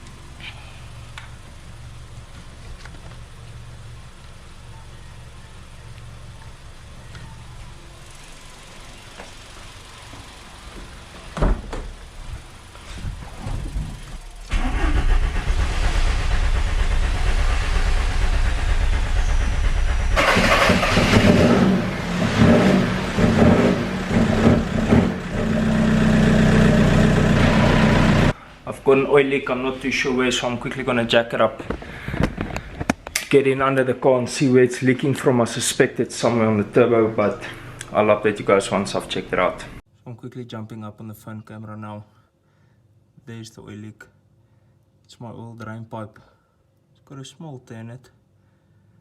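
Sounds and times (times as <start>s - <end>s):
diesel engine running: 0.1s - 28.5s, 36.1s - 39.8s.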